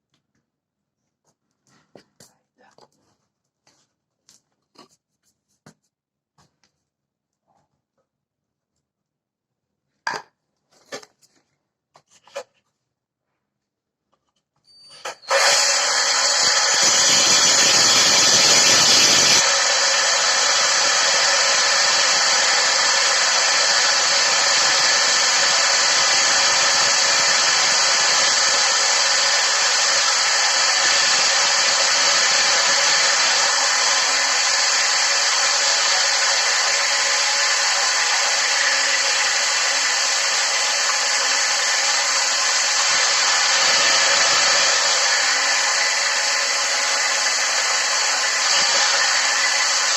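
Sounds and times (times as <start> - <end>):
electric drill cutting: 15.0 - 49.9.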